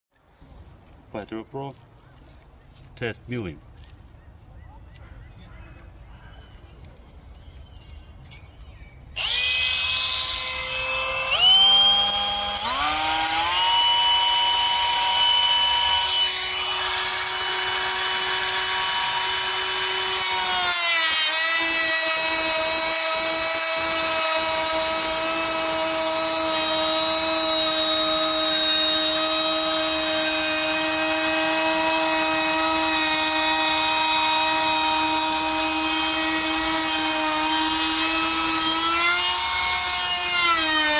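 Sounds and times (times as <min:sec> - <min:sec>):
router bit cutting wood: 0:09.2 - 0:40.9
trim router whining: 0:09.2 - 0:40.9.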